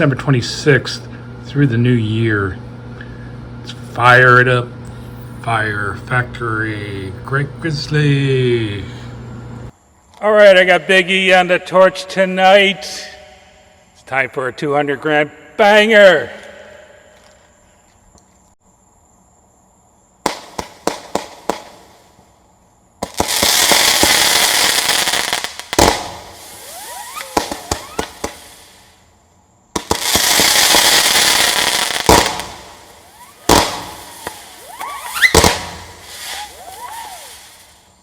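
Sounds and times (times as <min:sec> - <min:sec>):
firework bangs: 0:20.2 - 0:22.1, 0:23.0 - 0:29.0, 0:29.7 - 0:38.0
firework launch pops: 0:20.2 - 0:22.1, 0:23.0 - 0:24.3, 0:25.4 - 0:28.8, 0:29.7 - 0:37.9
whistling zipper fireworks: 0:23.0 - 0:29.0, 0:29.7 - 0:38.0
loud firework hissing: 0:23.0 - 0:29.1, 0:29.7 - 0:38.0.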